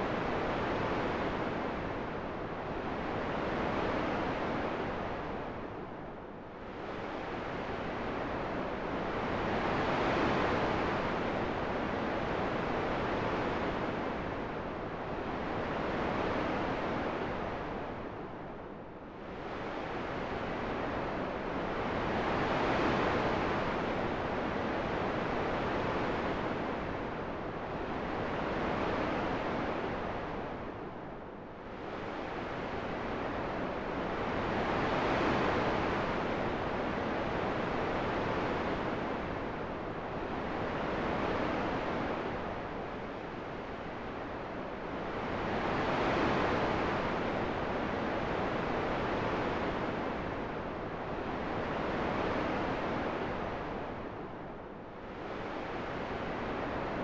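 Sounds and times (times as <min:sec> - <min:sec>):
wind blowing in gusts: 0:27.6 - 0:53.8.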